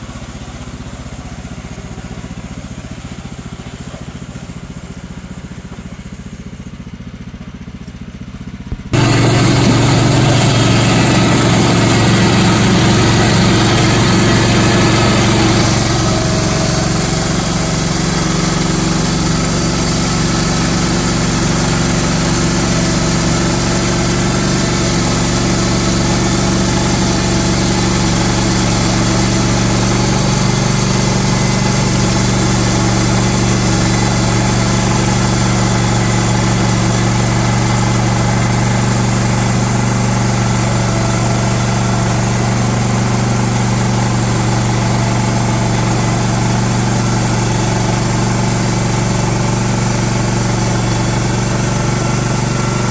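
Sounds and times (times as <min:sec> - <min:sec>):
sawmill gas engine running: 0:00.0 - 0:52.9.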